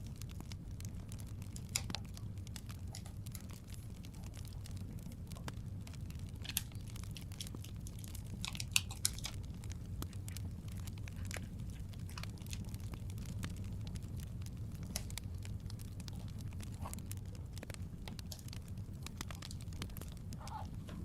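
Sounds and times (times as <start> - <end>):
crackling fireplace: 0.0 - 21.0
sharp clicks and pops: 0.1 - 21.0.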